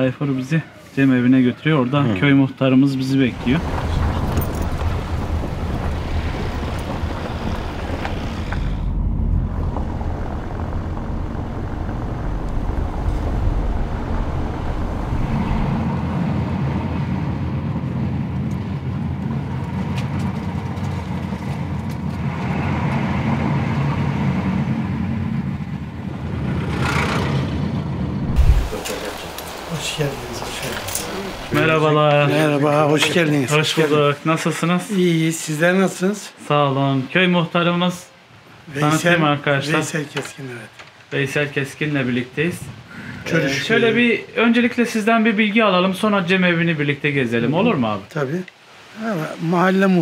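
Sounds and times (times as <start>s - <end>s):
road rumble: 2.9s - 33.6s
car engine: 3.2s - 31.6s.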